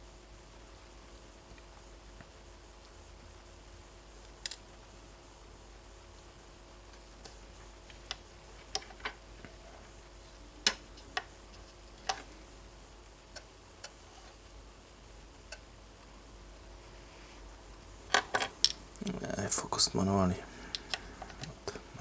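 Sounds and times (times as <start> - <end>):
faint steady hum: 0.0 - 22.0
small clicks and taps of tools: 4.2 - 4.6, 20.7 - 21.8.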